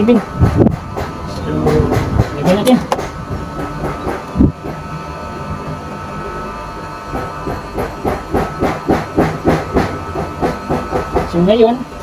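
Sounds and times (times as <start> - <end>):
steady hum: 0.0 - 12.0
cable handling knocks and clicks: 1.7 - 3.7.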